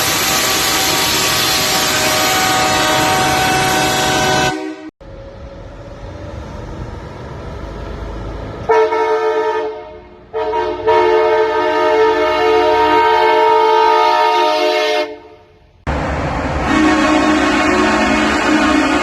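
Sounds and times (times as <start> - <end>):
train horn blasts: 0.0 - 4.9, 8.7 - 15.5, 16.6 - 19.0.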